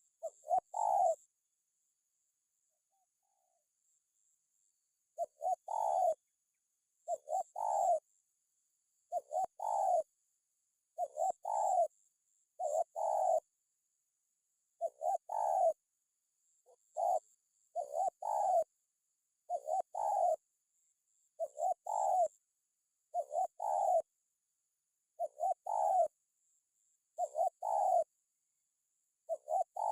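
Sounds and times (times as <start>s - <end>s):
dove cooing: 0.0s - 1.3s, 5.2s - 6.2s, 7.0s - 8.0s, 9.1s - 10.1s, 11.0s - 12.0s, 12.6s - 13.5s, 14.8s - 15.8s, 16.6s - 18.7s, 19.5s - 20.4s, 21.4s - 22.4s, 23.1s - 24.1s, 25.2s - 26.2s, 27.2s - 28.2s, 29.3s - 29.9s.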